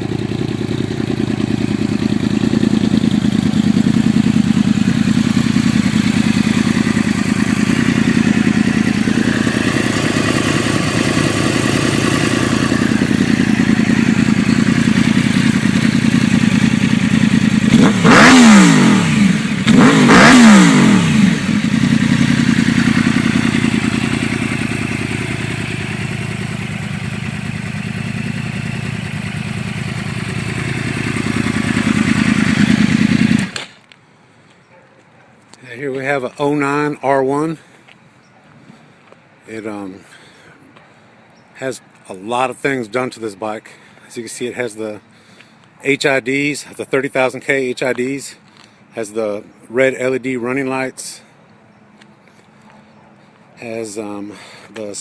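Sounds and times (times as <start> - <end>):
motorcycle engine idling and revving: 0.0 - 34.0.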